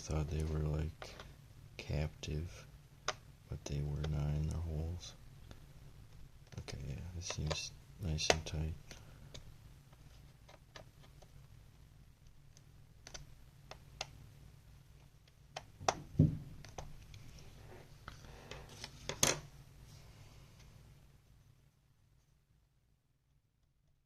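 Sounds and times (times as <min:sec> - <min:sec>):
laptop parts clicking and tapping: 0:12.5 - 0:14.2, 0:15.0 - 0:17.0.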